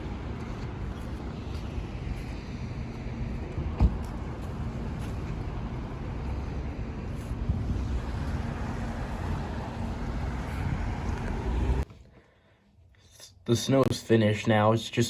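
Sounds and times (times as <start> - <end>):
low outdoor rumble: 0.0 - 11.9.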